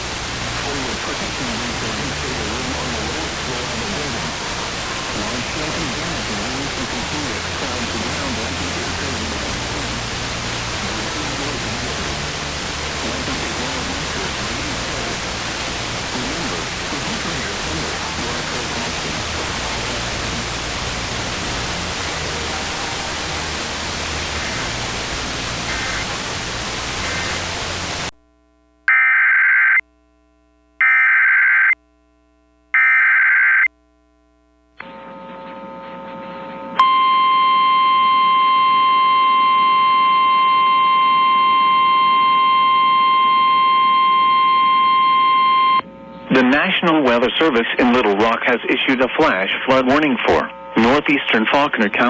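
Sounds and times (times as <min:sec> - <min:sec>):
buzzy digital header tones: 0:00.0 - 0:28.1, 0:28.9 - 0:29.8, 0:30.8 - 0:31.8, 0:32.8 - 0:33.7, 0:36.8 - 0:52.0
radio static hiss: 0:00.0 - 0:28.1, 0:40.7 - 0:52.0
steady single-pitch alert tone: 0:36.8 - 0:46.6.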